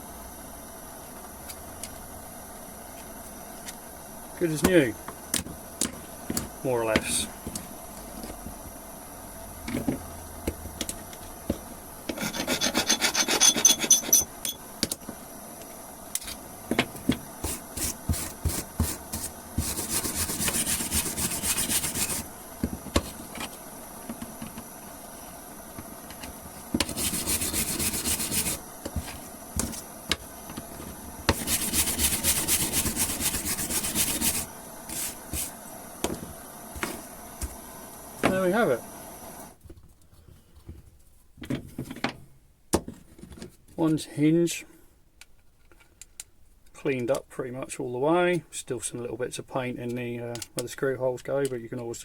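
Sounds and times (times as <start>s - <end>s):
wire brush scrubbing metal: 12.2s - 14.2s, 17.4s - 22.3s, 26.8s - 29.7s, 31.3s - 35.5s.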